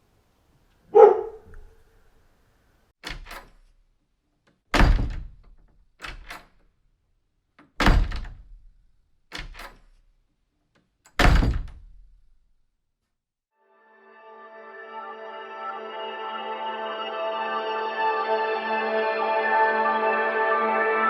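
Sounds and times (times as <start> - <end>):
heavy door slamming: 4.7 - 6.5, 7.8 - 8.8, 11.1 - 12.3.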